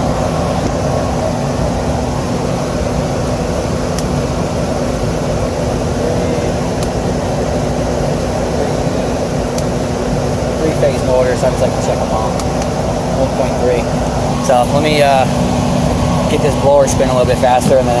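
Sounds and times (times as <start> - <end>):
blower fan motor running: 0.0 - 18.0.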